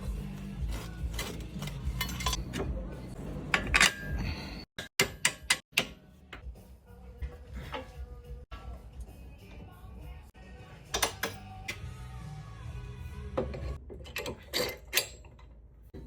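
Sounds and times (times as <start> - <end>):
metal tools clinking: 0.8 - 2.6, 3.6 - 5.6, 13.5 - 15.6.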